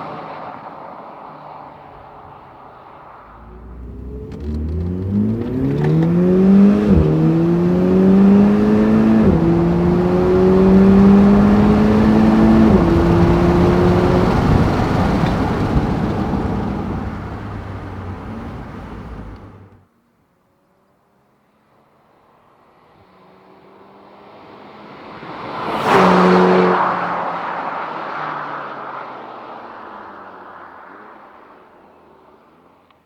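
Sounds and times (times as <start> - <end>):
car engine accelerating: 3.2 - 19.8.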